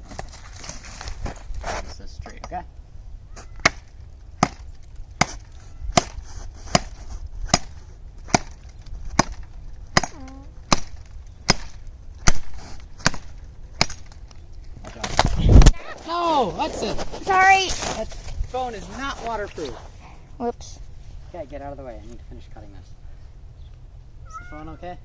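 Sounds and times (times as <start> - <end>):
machete chopping: 3.5 - 14.2.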